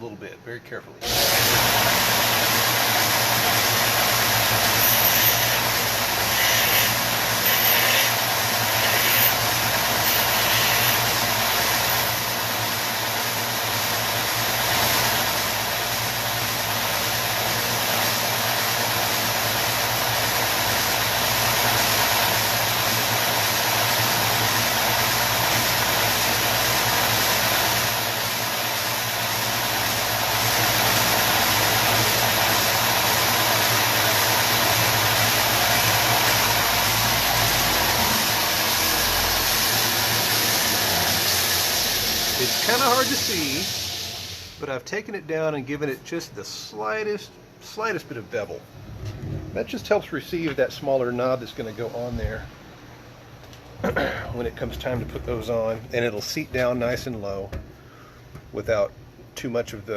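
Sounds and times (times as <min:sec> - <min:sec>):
belt sander running: 0:01.0 - 0:44.6
metal grinding against sanding belt: 0:04.4 - 0:12.4.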